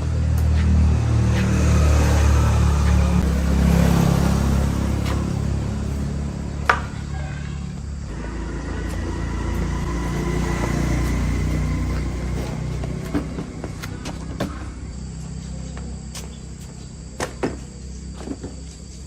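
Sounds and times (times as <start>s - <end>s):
low mechanical rumble: 0.0s - 19.0s.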